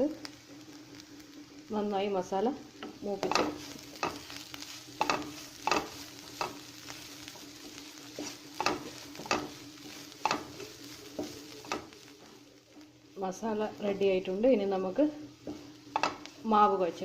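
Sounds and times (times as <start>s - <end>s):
food sizzling in a pan: 0.0s - 17.0s
spatula scraping a pan: 2.8s - 12.4s.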